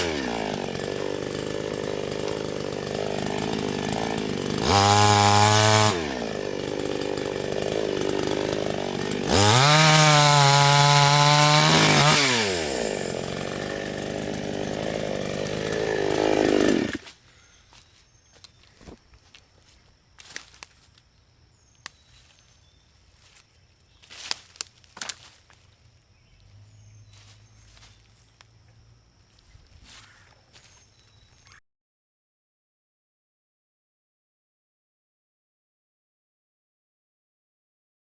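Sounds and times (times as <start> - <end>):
chainsaw revving: 0.0 - 17.1.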